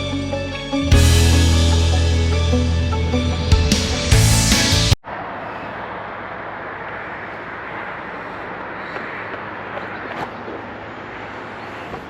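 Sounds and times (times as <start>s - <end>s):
vehicle rumble and hiss: 5.1s - 12.0s.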